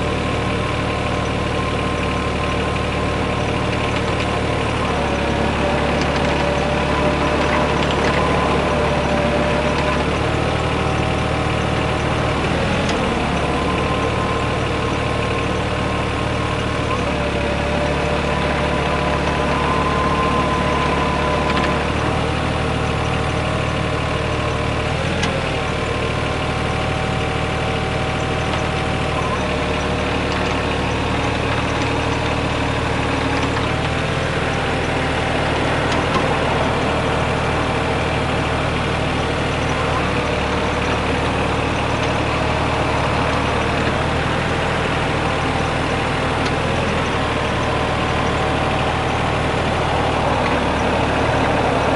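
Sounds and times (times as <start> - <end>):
excavator diesel engine running: 0.0 - 51.9
high-pitched hydraulic whine: 3.7 - 24.5.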